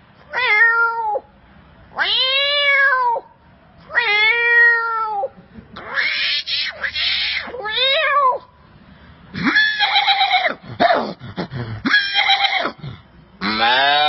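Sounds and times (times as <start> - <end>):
animal calls: 9.4 - 14.0.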